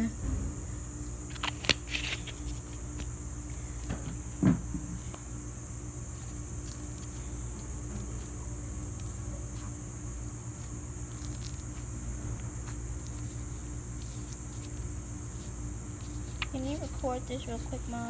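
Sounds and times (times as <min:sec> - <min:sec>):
low hum: 0:00.0 - 0:04.4
high hiss: 0:00.0 - 0:18.0.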